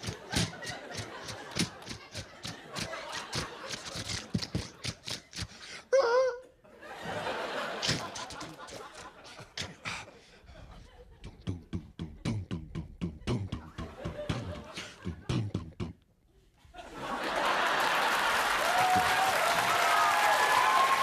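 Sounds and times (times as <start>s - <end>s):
audience laughter: 0.0s - 5.3s, 6.7s - 11.4s, 13.5s - 15.6s, 16.7s - 18.9s
mouth clicks: 0.0s - 6.3s, 11.2s - 16.1s.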